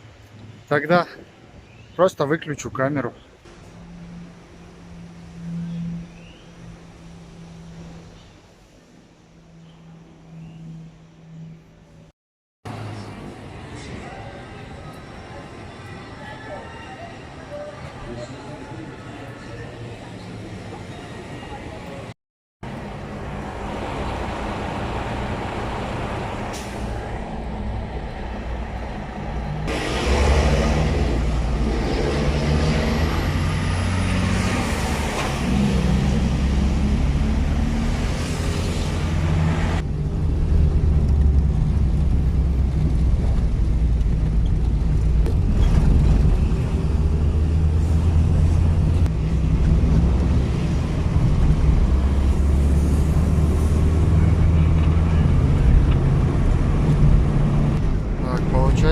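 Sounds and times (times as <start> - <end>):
vehicle engine and road rumble: 0.0 - 12.1, 12.7 - 16.0, 17.5 - 58.9.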